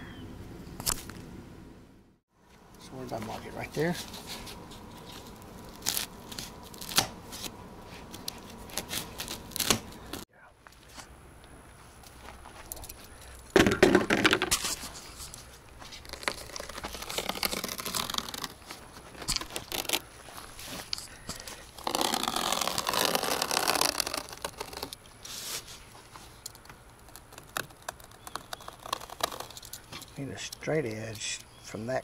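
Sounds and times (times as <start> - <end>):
material rustling and scraping: 3.6 - 11.1, 14.1 - 26.4, 27.0 - 30.3.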